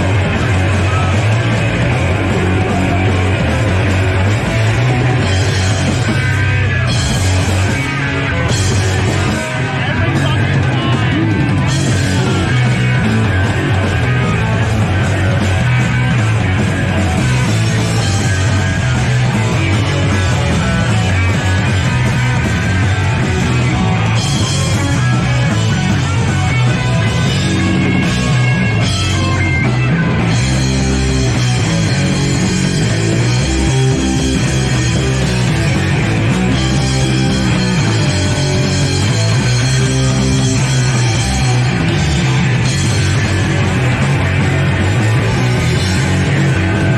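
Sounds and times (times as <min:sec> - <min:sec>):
electric guitar: 0:00.0 - 0:46.9
punk rock band playing live: 0:00.0 - 0:46.9.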